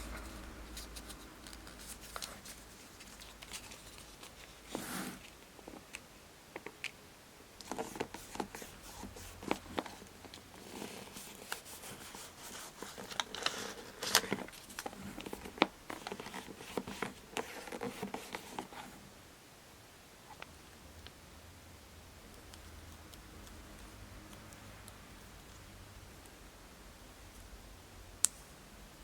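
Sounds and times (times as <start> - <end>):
rustling of craft materials: 0.0 - 7.0, 7.6 - 19.2.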